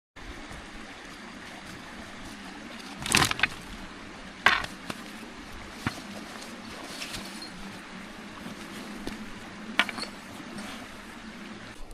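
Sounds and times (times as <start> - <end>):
metal utensils clattering: 9.8 - 10.2.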